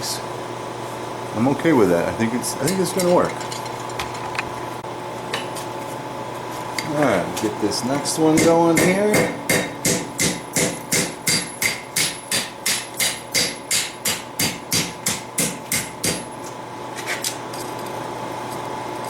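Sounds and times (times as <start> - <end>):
steady hum: 0.0 - 17.4
hammer striking steel on anvil: 8.3 - 16.3.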